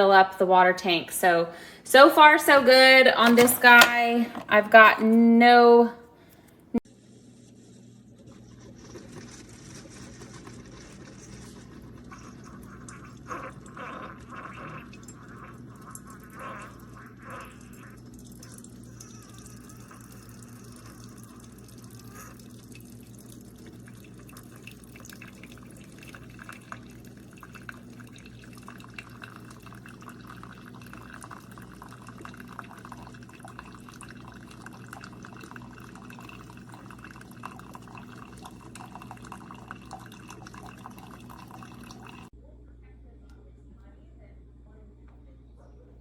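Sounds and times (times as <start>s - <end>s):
coffee maker pump hum: 0.0s - 5.4s, 6.8s - 42.4s
coffee dripping into cup: 8.2s - 42.3s.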